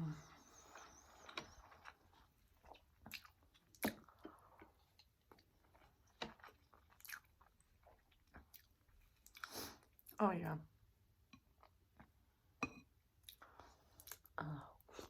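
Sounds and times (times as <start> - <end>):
person chewing food: 0.2 - 10.1, 13.2 - 15.0.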